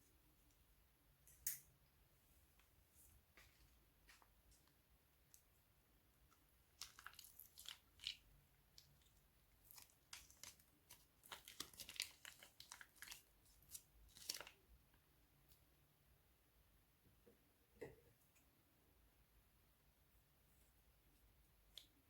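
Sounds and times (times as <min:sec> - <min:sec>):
slime and plastic bags crinkling: 0:06.2 - 0:14.6.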